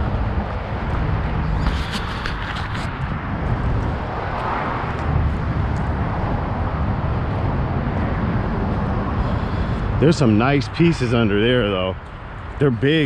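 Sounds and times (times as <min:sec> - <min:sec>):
low rumble of vehicle noise: 0:00.0 - 0:13.0.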